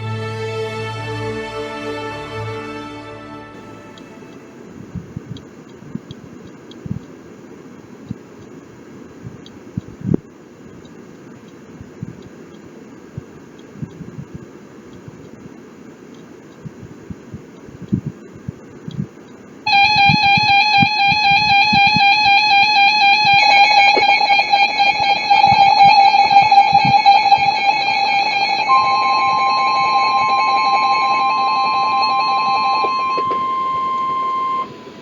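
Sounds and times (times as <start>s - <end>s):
steady single-pitch alarm tone: 3.6s - 4.6s, 19.7s - 35.0s
warbling electronic alarm: 19.7s - 35.0s.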